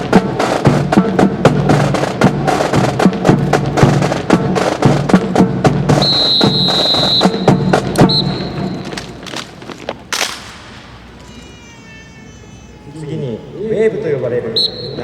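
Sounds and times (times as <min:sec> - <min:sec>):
drum cadence: 0:00.0 - 0:11.6
high whistle tone: 0:06.0 - 0:09.0, 0:11.2 - 0:13.6, 0:14.5 - 0:15.0
wooden clacks of rifles handled: 0:08.8 - 0:11.5.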